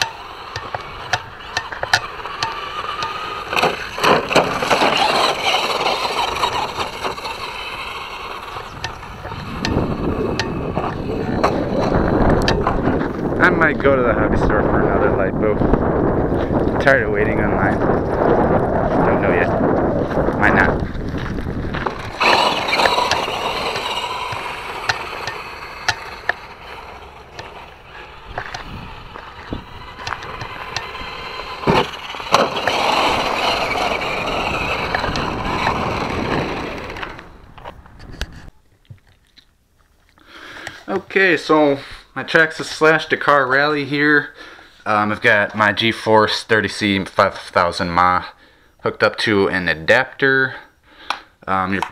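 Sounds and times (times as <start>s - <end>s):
truck bouncing knocks: 0.0s - 7.2s
wheels clicking over rough ground: 0.0s - 41.4s
rc truck tyres crunching over dirt: 0.0s - 48.3s.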